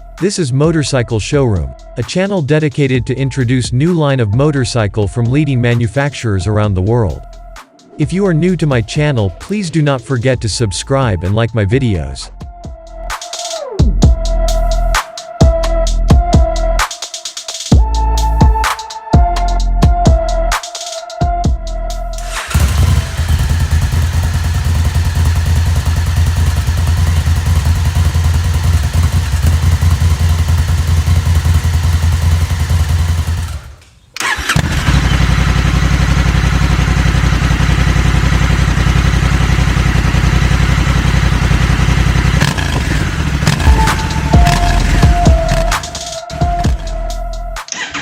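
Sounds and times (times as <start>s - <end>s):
motorcycle engine running: 22.2s - 47.2s.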